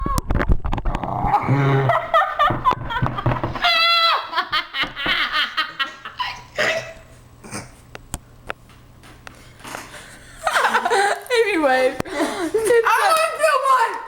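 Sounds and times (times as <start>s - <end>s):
girls laughing: 1.4s - 7.1s, 10.3s - 13.0s.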